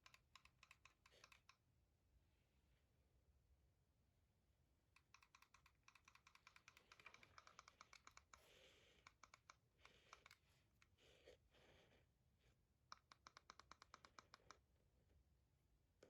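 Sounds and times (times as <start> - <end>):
typing on keyboard: 0.0 - 1.6, 5.0 - 8.4, 9.0 - 10.4, 12.9 - 14.6.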